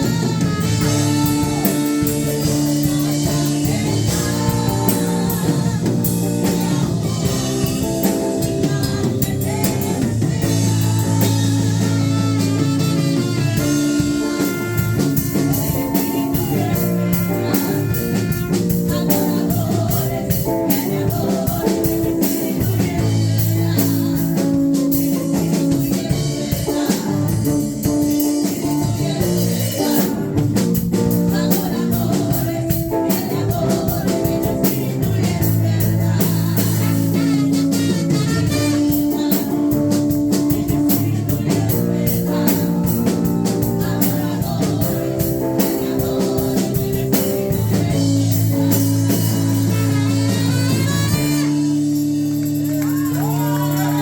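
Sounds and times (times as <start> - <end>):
drum kit: 0.0 - 54.0
guitar: 0.0 - 54.0
person singing: 13.6 - 27.6, 52.7 - 54.0.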